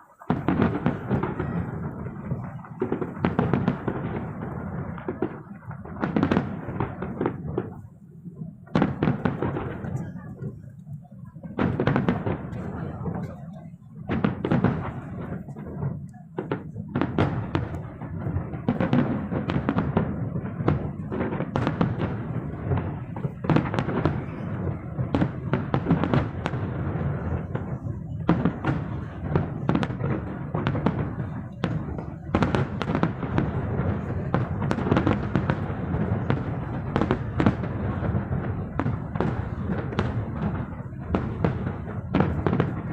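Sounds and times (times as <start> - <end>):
fireworks bangs and crackles: 0.0 - 42.9.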